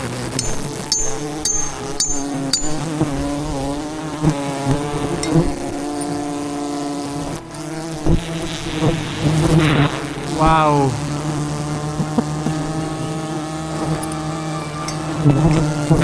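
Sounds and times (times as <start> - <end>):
bees buzzing: 0.0 - 16.0
sharp high ticks: 0.3 - 3.7.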